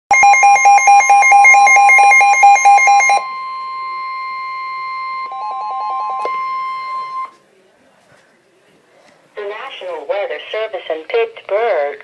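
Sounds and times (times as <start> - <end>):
two-pitch electronic alarm tone: 0.1 - 7.3.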